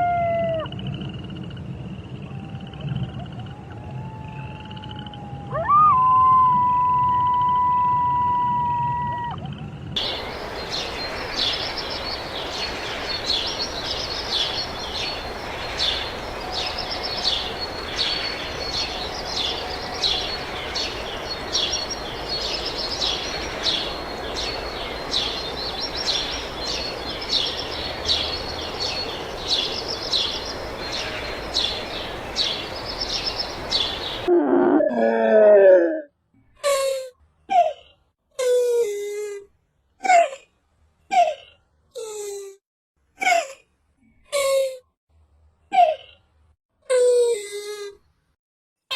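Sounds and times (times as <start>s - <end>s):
wavering animal call: 34.3s - 36.1s.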